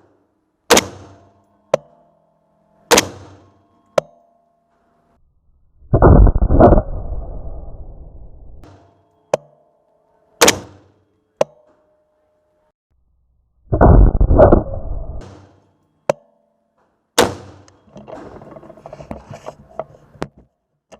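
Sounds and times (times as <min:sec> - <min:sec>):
rifle shot: 0:00.7 - 0:01.2, 0:02.9 - 0:03.4, 0:10.4 - 0:10.9.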